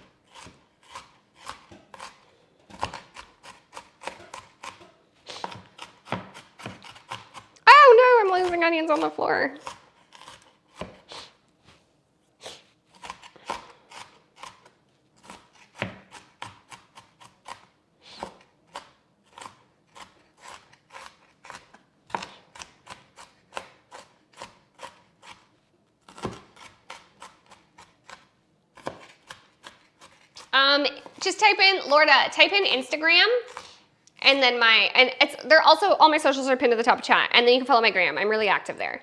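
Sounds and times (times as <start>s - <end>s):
knife chopping on cutting board: 0.2s - 7.5s, 8.4s - 11.1s, 12.9s - 31.2s.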